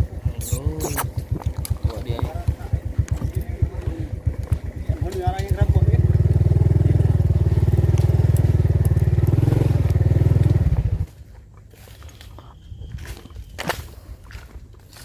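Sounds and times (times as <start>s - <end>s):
small engine running: 0.0s - 11.1s.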